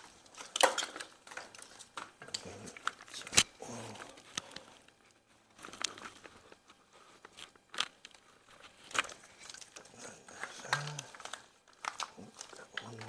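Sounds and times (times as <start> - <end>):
tools and parts clicking and knocking: 0.3 - 3.5.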